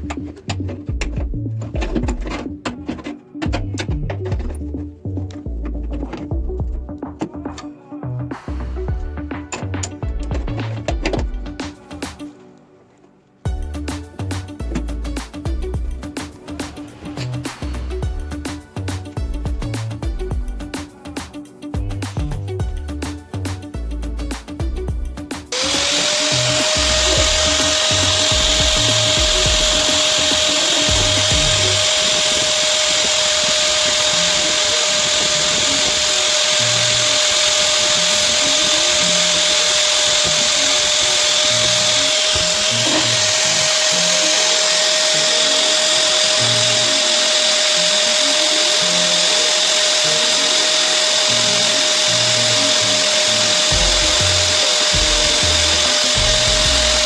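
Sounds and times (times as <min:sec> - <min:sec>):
background music with bass: 0:00.0 - 0:12.4, 0:13.4 - 0:57.0
power tool spinning: 0:25.5 - 0:57.0.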